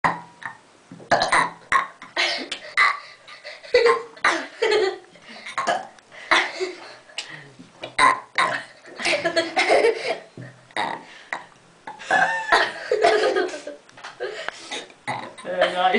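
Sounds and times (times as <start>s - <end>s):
people burping: 0.1s - 3.1s, 5.4s - 6.6s, 7.2s - 13.5s, 14.2s - 15.8s.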